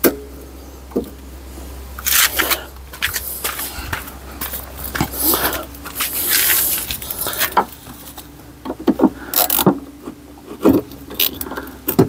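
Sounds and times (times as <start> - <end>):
scraping noise: 2.0 - 8.2.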